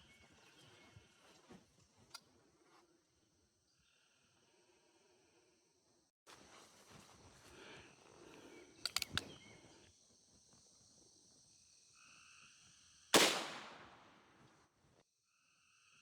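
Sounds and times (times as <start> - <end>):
quick metallic clicks: 8.8 - 9.4
revolver gunshot crack: 13.2 - 14.2.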